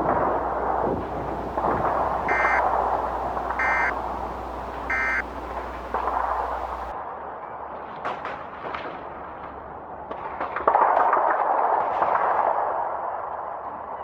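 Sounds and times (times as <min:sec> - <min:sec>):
digital data bursts: 0:00.0 - 0:06.9
noisy background with low hum: 0:00.0 - 0:06.9.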